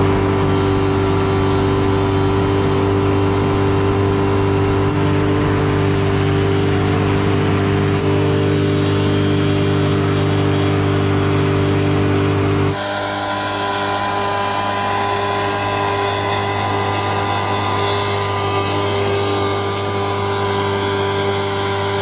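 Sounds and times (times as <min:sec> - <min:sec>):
hovercraft engine running: 0:00.0 - 0:22.0
rushing noise: 0:12.7 - 0:22.0.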